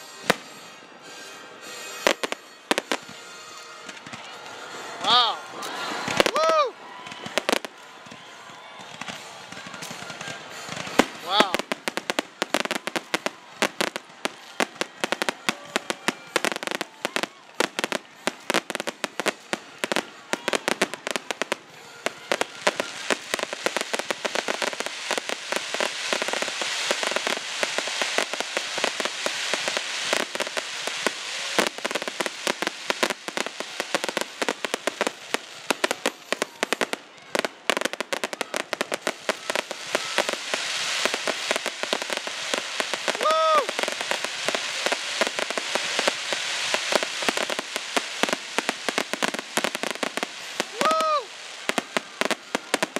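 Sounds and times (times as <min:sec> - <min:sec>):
firework crackling: 0:00.0 - 0:52.9.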